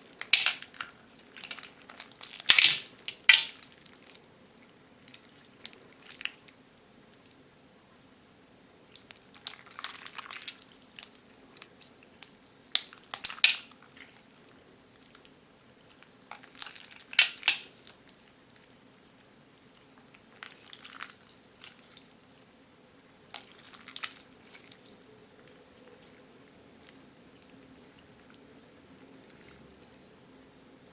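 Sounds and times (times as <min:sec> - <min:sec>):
slime with beads crackling: 0:00.2 - 0:03.7.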